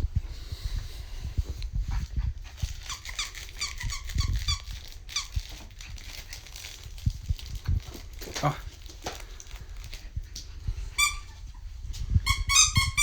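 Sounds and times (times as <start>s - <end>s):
squeaky toy squeaking: 2.8s - 5.4s, 11.0s - 11.3s, 12.2s - 13.0s.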